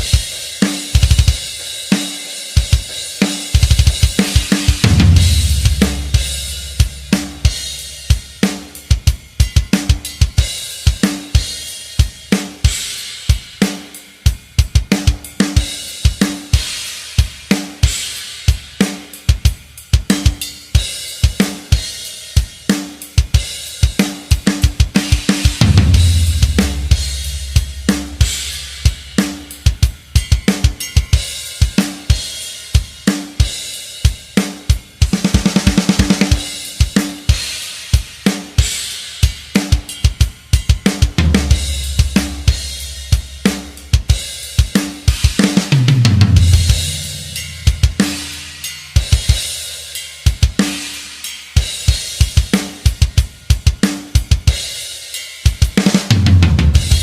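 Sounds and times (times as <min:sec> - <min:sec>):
drum kit rock beat: 0:00.0 - 0:57.0.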